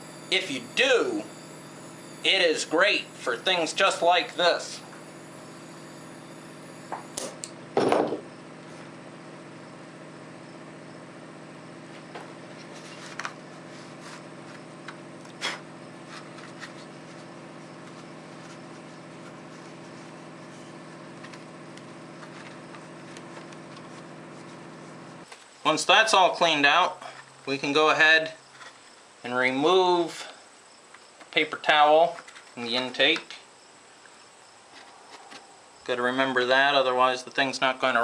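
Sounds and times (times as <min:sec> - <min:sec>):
machine hum: 0:00.0 - 0:31.2.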